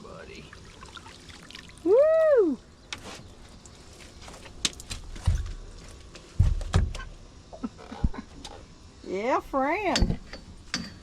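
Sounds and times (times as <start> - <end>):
person whooping: 1.8 - 2.6.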